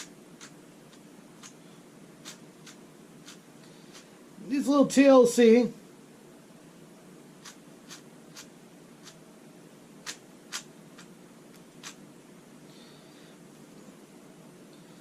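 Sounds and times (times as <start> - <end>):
speed cube plastic clicks: 0.0 - 1.6, 2.2 - 4.0, 7.4 - 9.2, 10.0 - 12.0.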